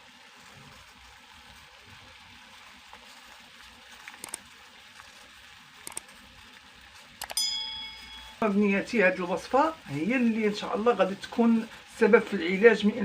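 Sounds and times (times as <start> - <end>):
pot of water simmering: 0.0 - 13.0
metal clink: 7.3 - 8.4.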